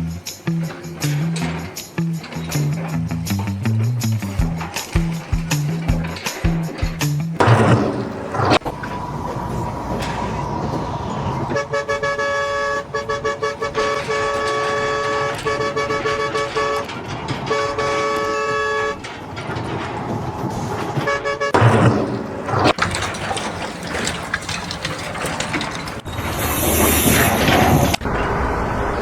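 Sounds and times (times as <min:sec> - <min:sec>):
vehicle horn honking: 0:11.3 - 0:19.2, 0:21.0 - 0:21.7.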